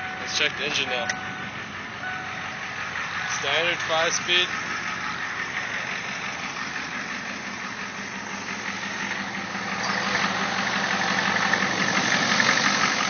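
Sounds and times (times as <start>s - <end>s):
diesel engine idling: 0.0s - 13.0s.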